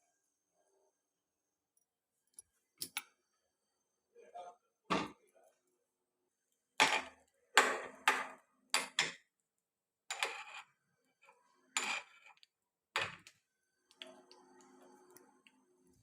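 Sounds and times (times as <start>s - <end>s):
utensils knocking on pots and dishes: 6.8s - 9.2s.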